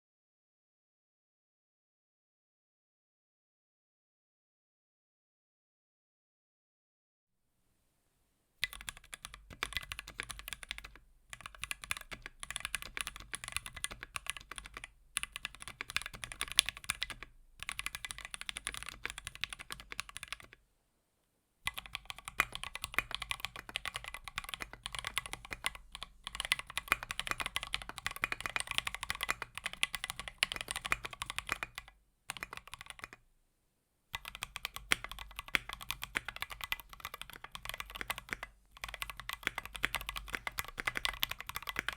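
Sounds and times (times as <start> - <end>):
fast mechanical keyboard typing: 8.6 - 20.6, 21.7 - 33.2, 34.2 - 41.9.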